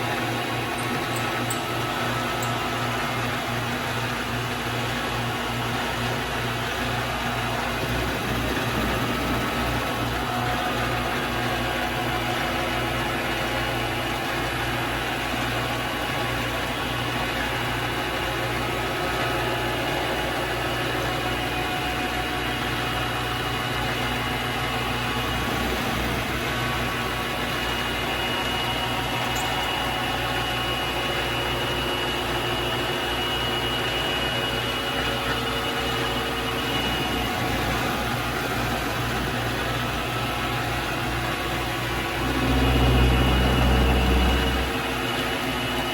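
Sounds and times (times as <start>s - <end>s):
lathe motor humming: 0.0s - 45.9s
lathe cutting screw: 0.5s - 2.6s.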